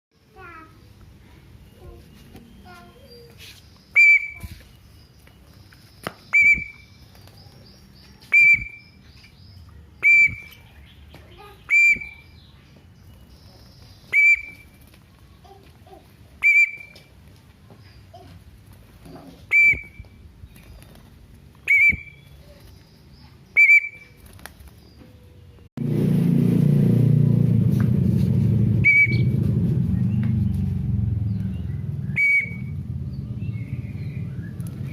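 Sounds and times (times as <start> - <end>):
high whistled chirps: 3.8 - 5.0, 6.2 - 7.0, 8.2 - 9.4, 10.0 - 10.7, 11.6 - 12.5, 14.1 - 14.8, 16.4 - 17.1, 19.5 - 20.1, 21.7 - 22.4, 23.5 - 24.2, 28.8 - 29.4, 32.0 - 32.8
loud low rumble: 25.8 - 34.9.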